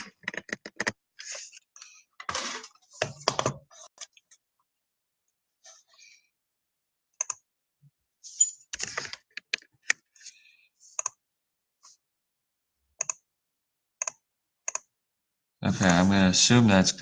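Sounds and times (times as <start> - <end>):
keyboard and mouse clicks: 0.0 - 1.0, 7.2 - 7.4, 11.0 - 11.2, 13.0 - 13.2, 14.0 - 14.9.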